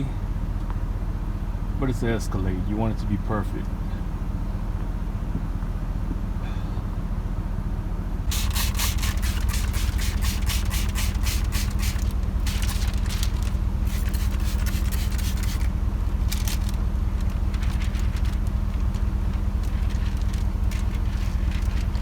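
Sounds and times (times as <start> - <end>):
steady low hum: 0.0 - 22.0
squeegee scraping on film: 8.3 - 22.0.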